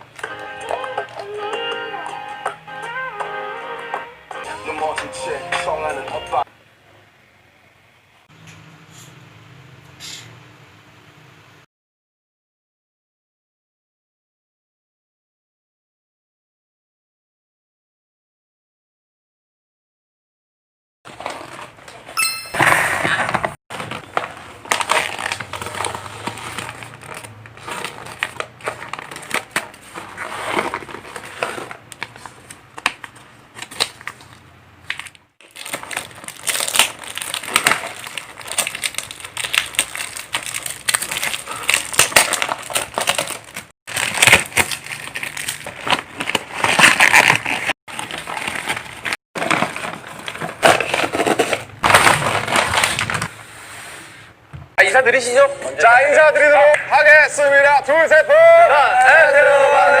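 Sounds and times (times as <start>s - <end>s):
packaging crinkling and rustling: 21.1s - 22.2s, 23.3s - 53.4s.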